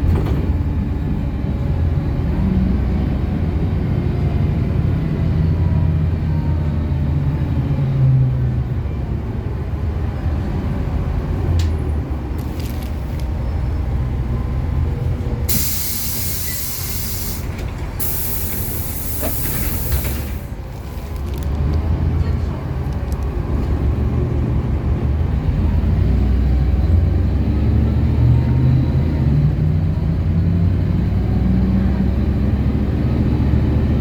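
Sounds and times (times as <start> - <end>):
bus engine running: 0.0 - 34.0
compressed-air hiss: 15.5 - 20.5.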